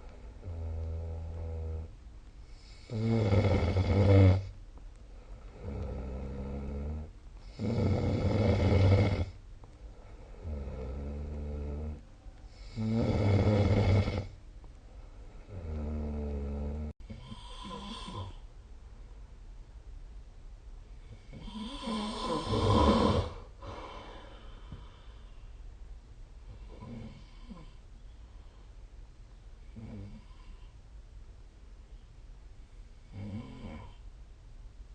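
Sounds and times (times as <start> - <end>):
person snoring: 2.5 - 4.5, 5.5 - 9.4, 10.2 - 14.4, 15.4 - 18.4, 21.1 - 25.1, 33.1 - 34.0.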